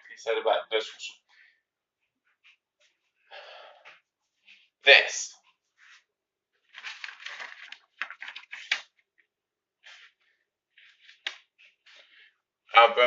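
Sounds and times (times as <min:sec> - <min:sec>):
crinkly rustling: 0:06.6 - 0:09.2.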